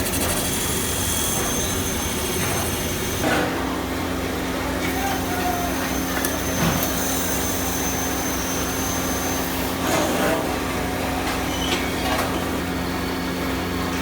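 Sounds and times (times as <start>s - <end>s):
high machine whine: 0.0s - 3.3s
machinery humming: 0.0s - 9.8s.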